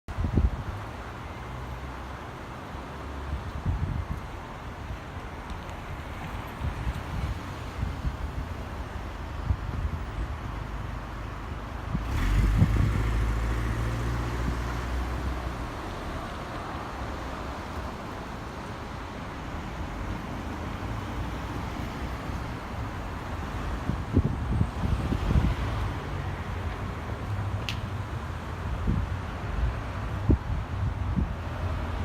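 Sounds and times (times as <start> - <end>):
road traffic: 0.1 - 32.0
wind buffeting microphone: 3.3 - 11.2, 11.8 - 16.1, 22.3 - 32.0.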